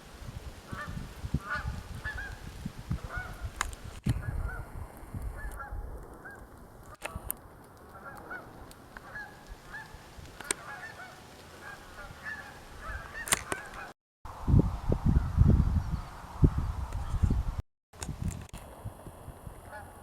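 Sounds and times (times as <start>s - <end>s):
geese honking: 3.0s - 3.5s, 7.9s - 13.9s, 19.7s - 20.0s
sharp clicks: 13.2s - 13.8s.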